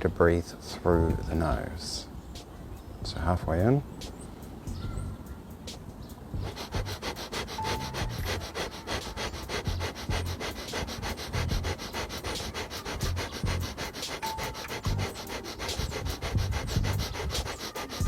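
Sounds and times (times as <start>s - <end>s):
rapid forceful nose breathing: 6.4s - 18.0s.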